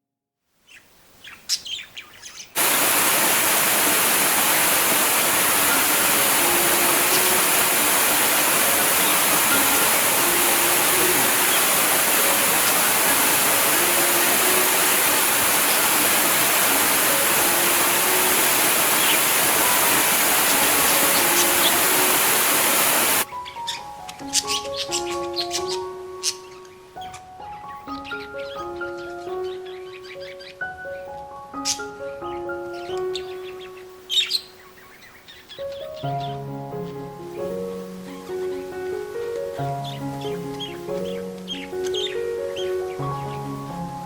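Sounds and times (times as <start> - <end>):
bird chirps: 0.7 - 30.7
water rushing: 2.6 - 23.3.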